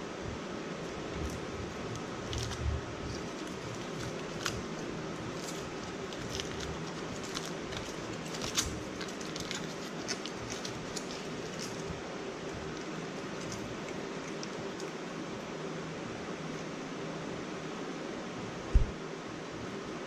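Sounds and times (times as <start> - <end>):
packaging crinkling: 0.9 - 15.0.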